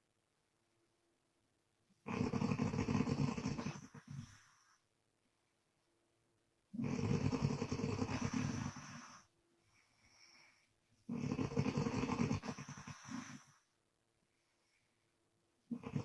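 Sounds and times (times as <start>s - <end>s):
woman snoring with flapping lips: 2.0s - 4.4s, 6.8s - 9.3s, 11.1s - 13.6s, 15.7s - 16.0s
faint breath in: 8.2s - 10.9s, 12.6s - 15.2s.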